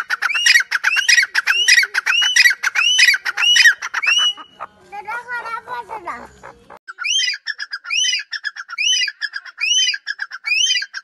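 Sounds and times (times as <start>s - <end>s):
francolin calling: 0.0s - 4.8s, 5.8s - 11.0s.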